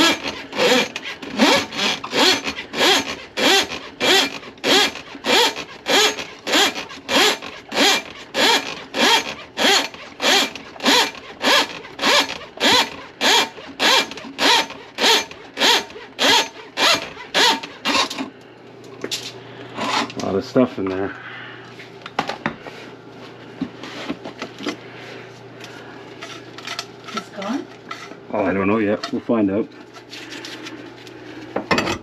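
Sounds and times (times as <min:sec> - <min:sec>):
drain cable rasping in pipe: 0:00.0 - 0:18.2.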